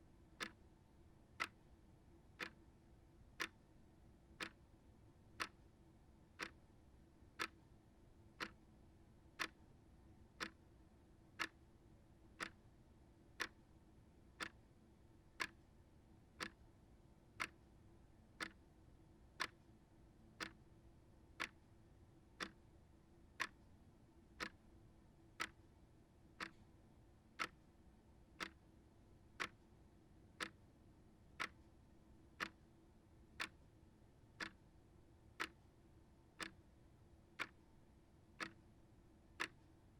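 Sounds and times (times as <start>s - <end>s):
shelf clock ticking: 6.4s - 6.6s, 7.4s - 7.6s, 9.4s - 9.6s, 14.4s - 14.6s, 15.4s - 15.6s, 16.4s - 16.6s, 17.4s - 17.6s, 18.4s - 18.6s, 24.4s - 24.6s, 25.4s - 25.6s, 26.4s - 26.6s, 27.4s - 27.6s, 28.4s - 28.6s, 29.4s - 29.6s, 30.4s - 30.6s, 31.4s - 31.6s, 32.4s - 32.6s, 33.4s - 33.6s, 34.4s - 34.6s, 35.4s - 35.6s, 36.4s - 36.6s, 37.4s - 37.6s, 38.4s - 38.6s, 39.4s - 39.6s.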